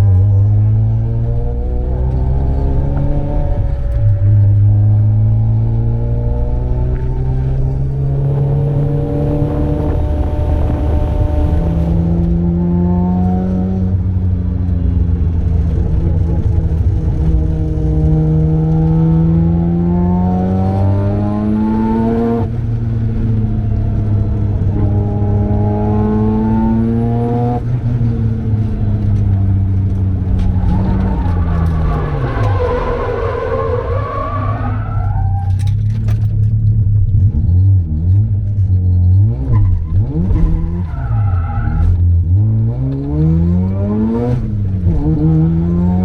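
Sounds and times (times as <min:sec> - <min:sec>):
rotary engine at full throttle: 0:06.2 - 0:13.8.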